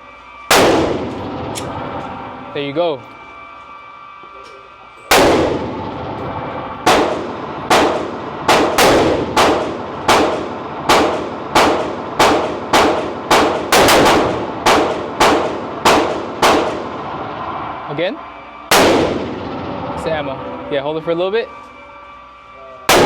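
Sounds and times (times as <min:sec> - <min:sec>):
pistol shots with ringing echo: 0:00.5 - 0:02.0, 0:05.1 - 0:17.0, 0:18.7 - 0:19.7.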